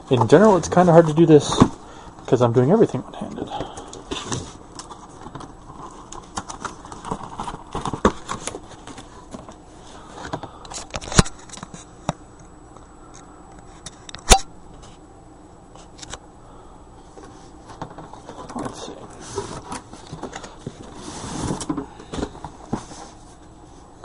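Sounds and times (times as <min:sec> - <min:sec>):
handling rustles and clicks: 0:02.8 - 0:09.6.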